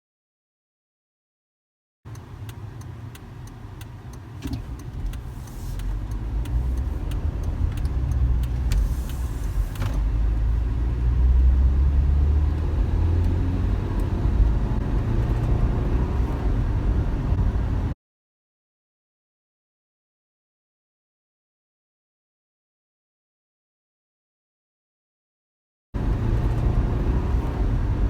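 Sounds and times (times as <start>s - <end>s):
light engine ticks: 2.1s - 9.6s
car engine accelerating: 2.1s - 18.0s, 26.0s - 28.0s.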